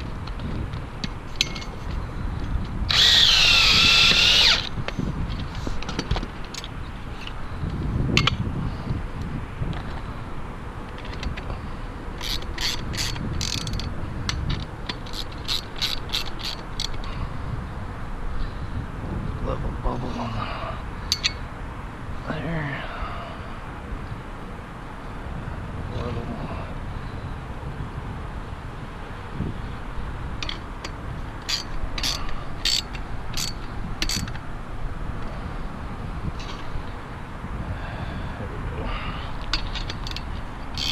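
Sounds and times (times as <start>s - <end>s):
ratchet wrench clicking: 2.9s - 4.8s, 12.2s - 17.1s, 21.1s - 21.4s, 30.4s - 34.4s, 39.5s - 40.9s.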